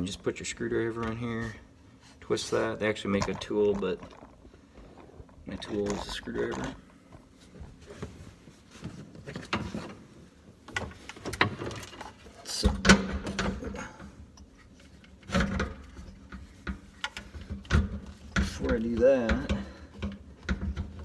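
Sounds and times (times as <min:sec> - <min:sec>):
screwdriver and metal parts clunking: 0:02.4 - 0:04.4, 0:10.7 - 0:21.0.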